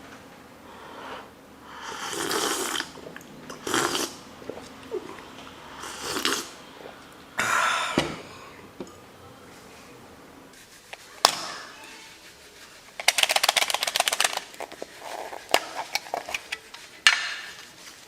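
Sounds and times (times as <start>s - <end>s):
person slurping coffee: 1.1s - 7.6s.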